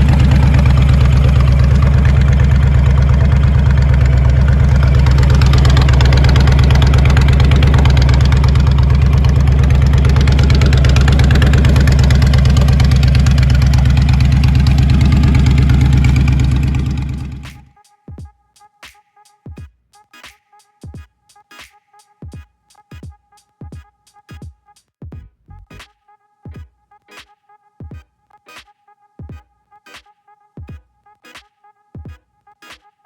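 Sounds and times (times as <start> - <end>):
motorcycle engine idling: 0.0 - 17.7.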